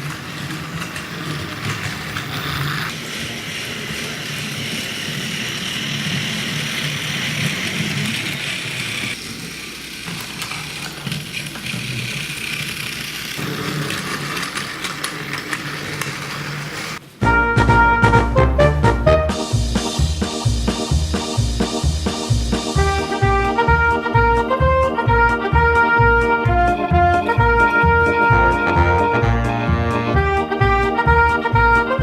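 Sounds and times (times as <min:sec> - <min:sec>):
toy train motor whirring: 0:00.0 - 0:17.0.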